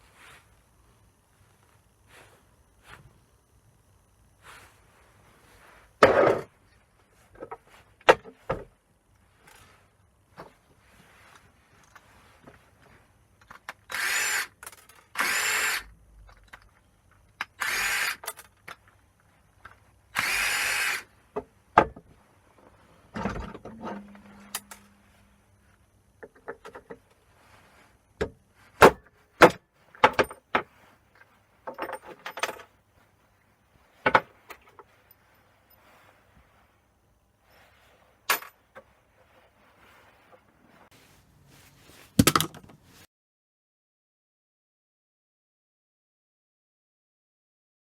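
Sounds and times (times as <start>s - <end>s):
small parts clicking and knocking: 13.4s - 21.0s, 42.2s - 42.8s
power drill bursts: 13.9s - 15.9s, 17.4s - 18.4s, 20.1s - 21.1s.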